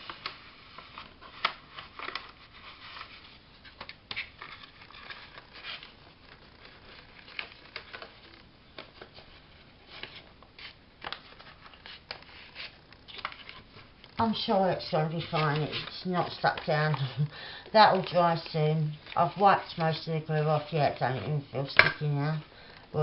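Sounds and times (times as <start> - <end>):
rustling scuffs on paper: 0.0 - 17.2.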